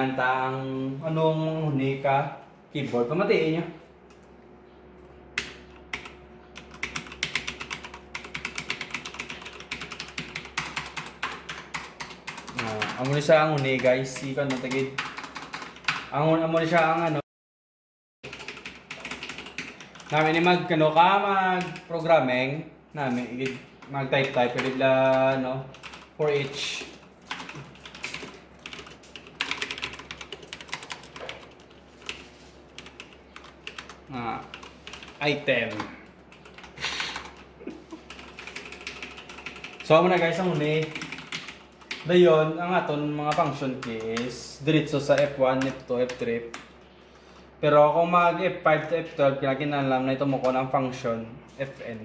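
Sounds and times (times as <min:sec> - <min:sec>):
mechanical keyboard typing: 0:05.4 - 0:17.2, 0:18.3 - 0:21.9, 0:23.4 - 0:32.2, 0:32.8 - 0:37.5, 0:38.1 - 0:42.2, 0:43.0 - 0:46.7.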